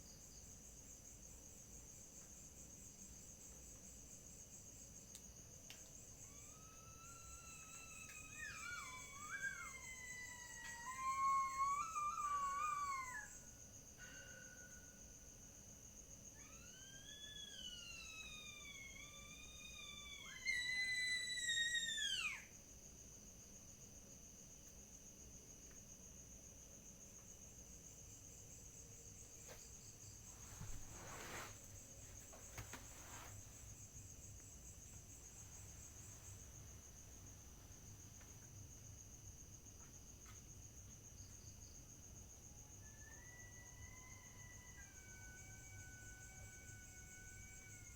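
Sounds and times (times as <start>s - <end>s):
night insects chirring: 0.0s - 47.9s
animals howling: 6.2s - 13.6s, 16.4s - 22.5s, 42.8s - 47.9s
soft rustles: 29.2s - 37.2s.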